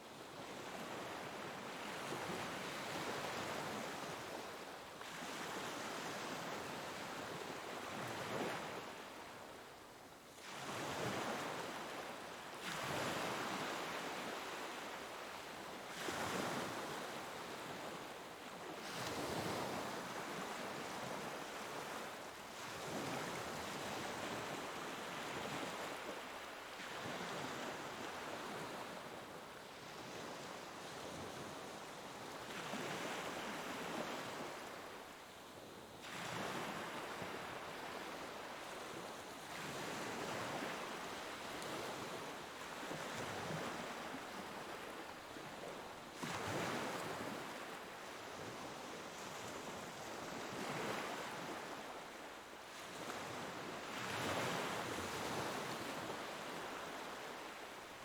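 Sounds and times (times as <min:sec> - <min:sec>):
ocean waves breaking on shore: 0:36.0 - 0:52.1.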